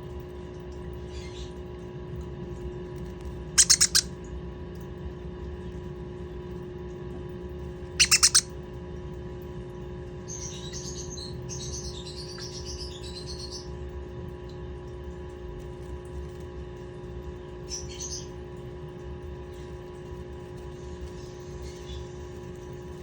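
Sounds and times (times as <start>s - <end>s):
raspy chattering: 3.6s - 4.0s, 8.0s - 8.5s
parrot chick chirping: 3.6s - 4.1s, 8.0s - 8.5s.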